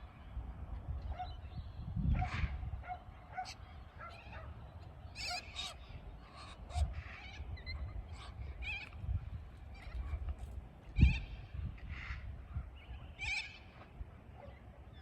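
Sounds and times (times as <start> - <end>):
birds chirping and squawking: 3.4 - 10.3, 11.0 - 14.6.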